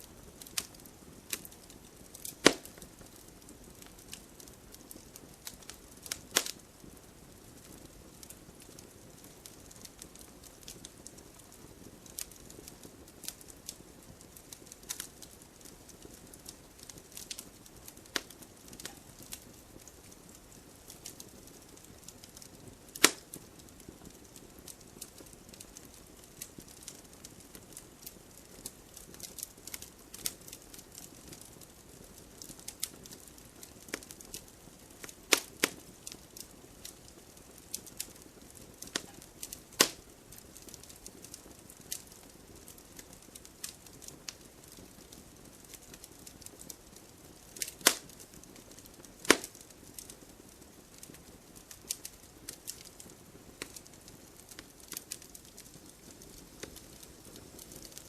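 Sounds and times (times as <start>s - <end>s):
campfire crackling: 0.0s - 58.0s
loud sharp pops: 2.3s - 2.8s, 23.0s - 23.2s, 39.8s - 40.0s, 47.8s - 48.1s, 49.2s - 49.5s.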